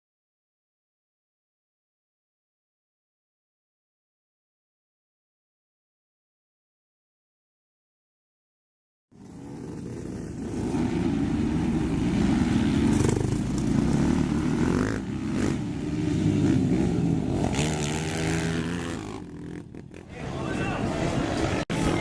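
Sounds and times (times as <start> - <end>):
racing quad engines revving: 9.2 - 22.0.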